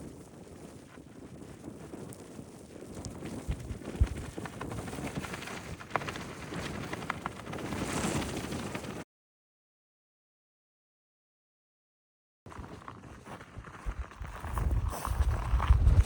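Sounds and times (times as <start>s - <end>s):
wind noise on microphone: 0.0s - 9.0s, 12.7s - 16.0s.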